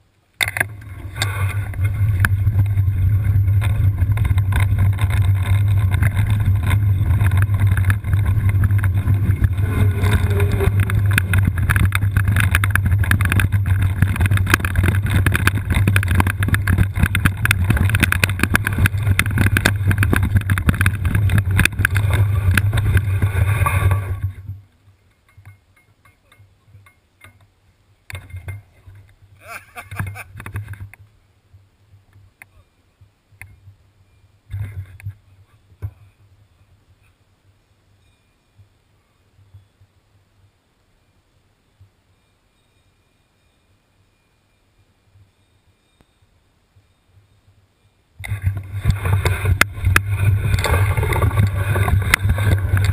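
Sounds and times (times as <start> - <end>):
wheelchair rattling on rough trail: 0.4 - 26.9, 28.1 - 31.1, 48.2 - 52.9
wind buffeting microphone: 0.7 - 24.7, 48.2 - 52.9.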